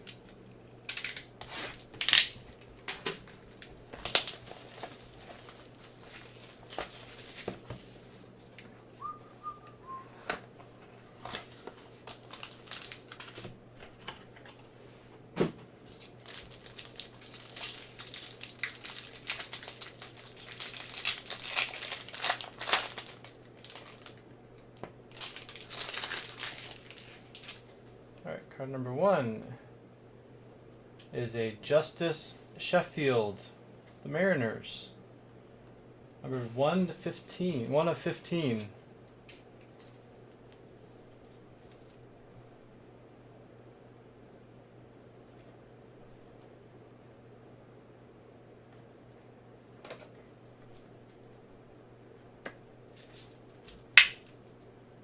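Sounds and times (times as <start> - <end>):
plastic wrapping crinkling and tearing: 0.0 - 9.1, 11.2 - 13.6, 15.9 - 24.2, 25.1 - 27.8.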